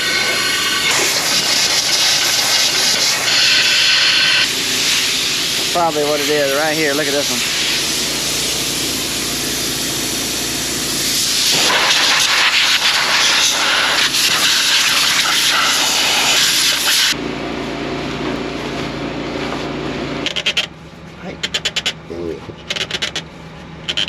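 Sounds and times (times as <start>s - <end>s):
rushing hiss of air: 0.0s - 17.2s
machine hum: 0.0s - 24.0s.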